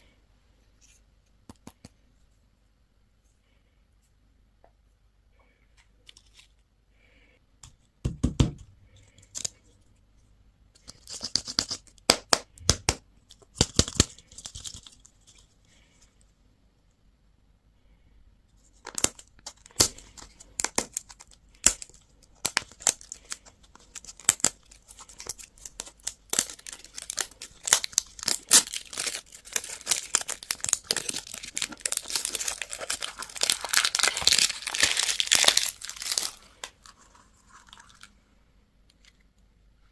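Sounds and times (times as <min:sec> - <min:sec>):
candy wrappers crinkling: 0:13.3 - 0:15.5, 0:18.8 - 0:38.2.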